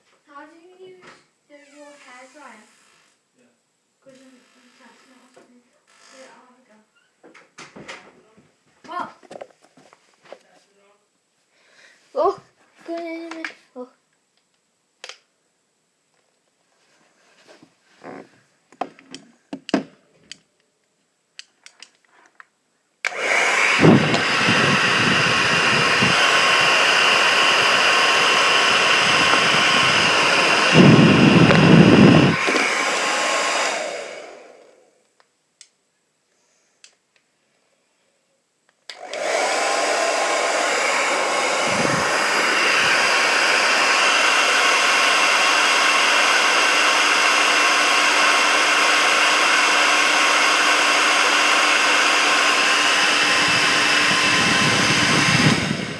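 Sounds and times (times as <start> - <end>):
hair dryer blowing: 23.0 - 35.0, 38.9 - 55.9.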